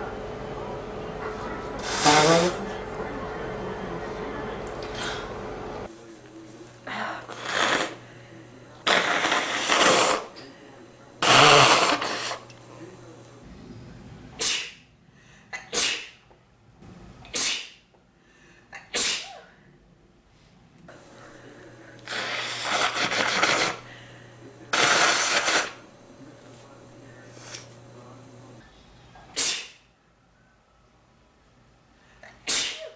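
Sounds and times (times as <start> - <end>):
man sneezing: 14.4 - 14.8, 15.6 - 16.2, 17.3 - 17.8, 18.8 - 19.6, 29.4 - 29.8, 32.4 - 32.9.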